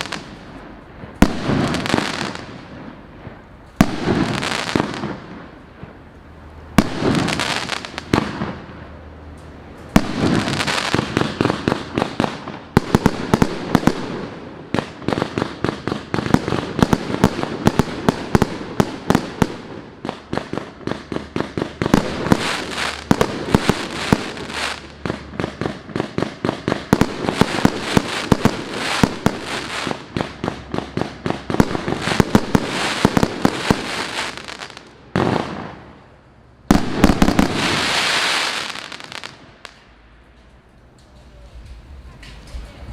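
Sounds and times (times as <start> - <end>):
fireworks shots firing: 0.0 - 6.1, 6.7 - 9.0, 9.9 - 36.1, 36.7 - 39.8
fireworks bursts and crackle: 0.0 - 42.9.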